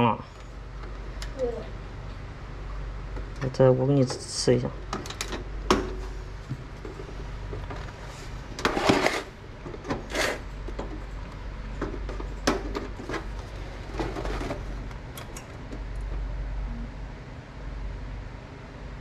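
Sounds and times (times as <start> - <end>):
steady low hum: 0.0 - 19.0
clicks and knocks on computer case: 4.9 - 6.7, 11.8 - 13.4.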